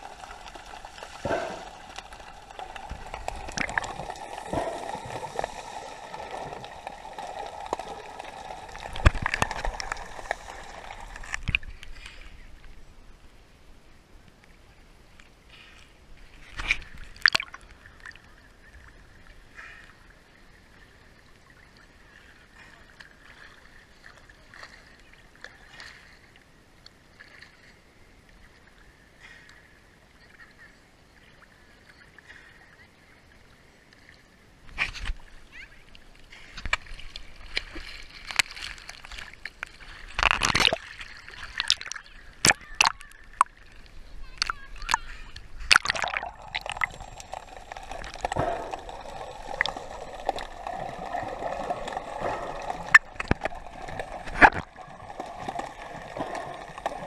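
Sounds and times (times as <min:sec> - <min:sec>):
sea water sloshing and splashing: 0:00.0 - 0:12.4, 0:34.0 - 0:57.0.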